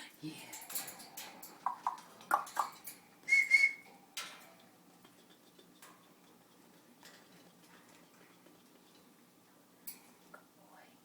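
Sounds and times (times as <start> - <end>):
parrot chirping: 1.6 - 3.8
parrot high whistle: 3.3 - 3.8.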